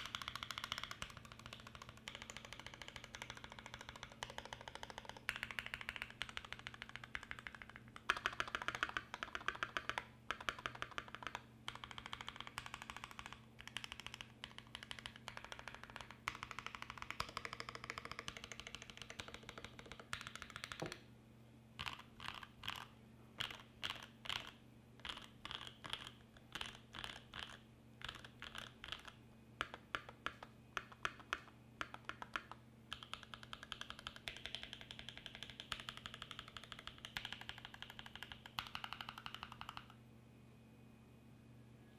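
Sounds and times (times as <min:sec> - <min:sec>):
mechanical keyboard typing: 0:00.0 - 0:21.0, 0:21.8 - 0:40.0
faint steady hum: 0:00.0 - 0:41.9.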